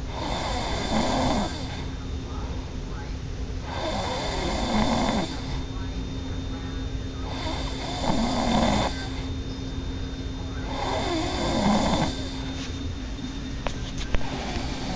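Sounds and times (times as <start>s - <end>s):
person snoring: 0.0s - 1.9s, 3.7s - 5.6s, 7.2s - 9.3s, 10.6s - 12.6s, 14.2s - 14.9s
faint steady hum: 0.0s - 14.9s.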